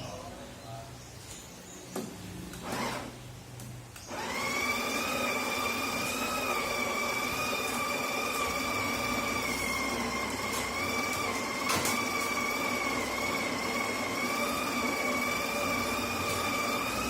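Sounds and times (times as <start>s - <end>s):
espresso machine motor whine: 4.1s - 17.0s.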